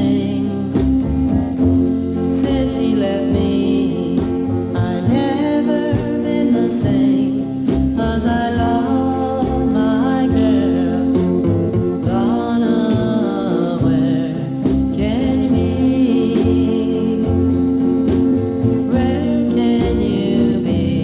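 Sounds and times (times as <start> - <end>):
person singing: 0.0 - 21.0
band playing sustained chords: 8.9 - 21.0.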